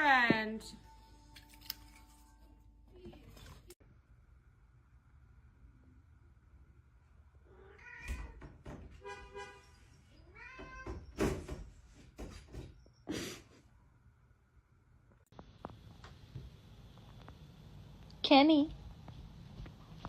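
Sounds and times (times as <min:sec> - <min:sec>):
cat meowing: 0:07.5 - 0:08.4, 0:10.2 - 0:11.0.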